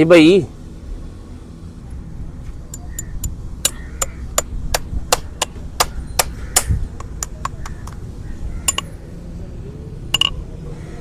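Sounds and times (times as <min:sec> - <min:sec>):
metallic hammer taps: 0:02.7 - 0:08.0, 0:08.7 - 0:08.9, 0:10.2 - 0:10.4.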